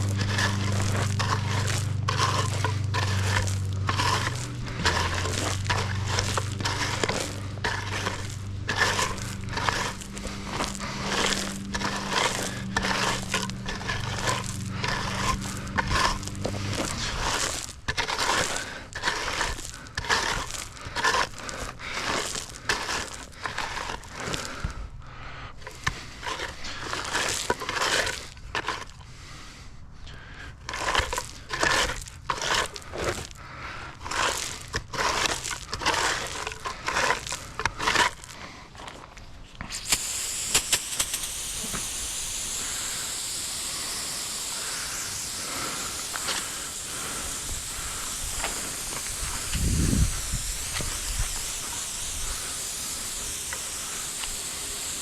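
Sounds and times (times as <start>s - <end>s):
hand tool scraping rocky soil: 0.0s - 24.9s, 25.5s - 55.0s
steady hiss: 39.6s - 55.0s.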